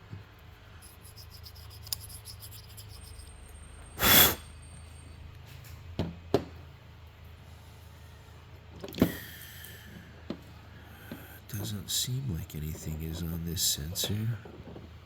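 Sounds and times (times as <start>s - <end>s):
loud puff of breath: 4.0s - 4.6s, 9.0s - 10.2s.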